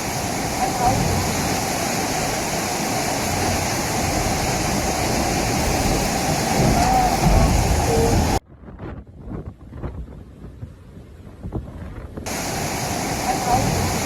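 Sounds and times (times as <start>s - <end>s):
river water roaring: 0.0s - 8.4s, 12.3s - 14.0s.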